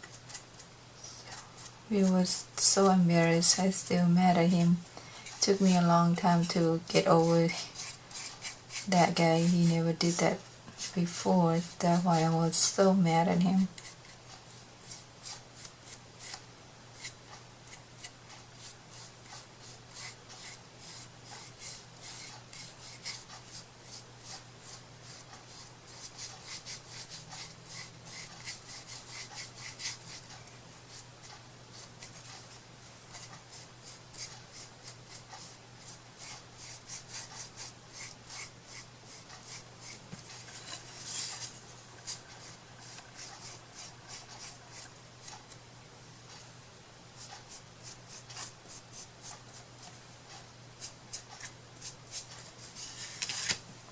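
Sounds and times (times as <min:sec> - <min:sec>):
rubbing strokes on wood: 0:01.0 - 0:12.7, 0:33.1 - 0:45.6.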